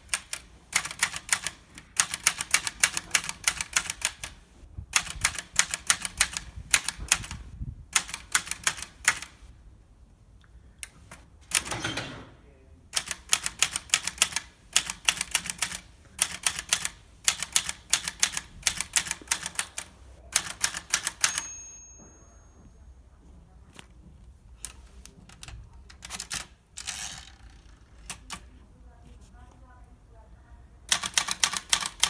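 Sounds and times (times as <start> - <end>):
typewriter carriage return: 0.0 - 4.4, 11.5 - 12.3, 13.0 - 21.9, 24.7 - 28.5, 30.9 - 32.0
typewriter keystrokes: 0.0 - 4.4, 5.0 - 7.4, 8.0 - 9.4, 13.0 - 21.6, 30.9 - 32.0
typewriter bell ringing: 20.6 - 22.8.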